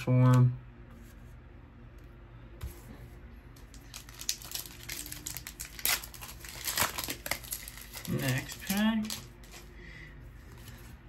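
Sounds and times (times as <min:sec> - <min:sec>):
foil wrapper crinkling: 0:03.6 - 0:09.7.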